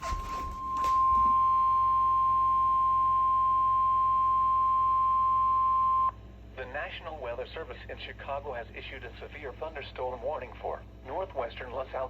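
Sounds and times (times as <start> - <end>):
steady high-pitched alarm tone: 0.0 - 6.1.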